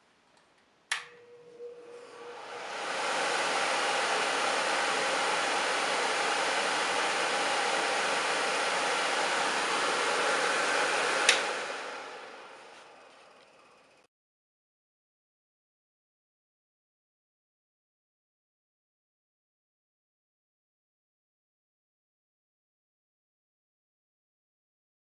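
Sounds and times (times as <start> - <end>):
switch click: 0.9 - 1.3, 11.2 - 11.5
pet dryer blower rushing: 1.0 - 13.2.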